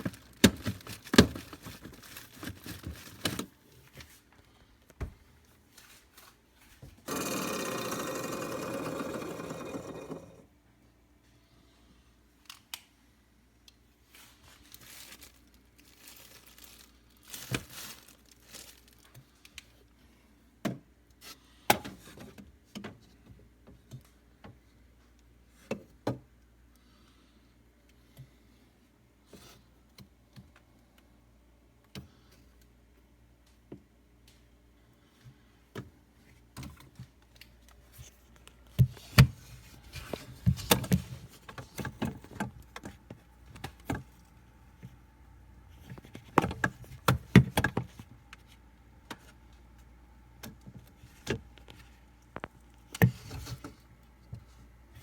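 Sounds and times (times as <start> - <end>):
plastic crinkling: 0.0 - 3.6, 14.2 - 19.2.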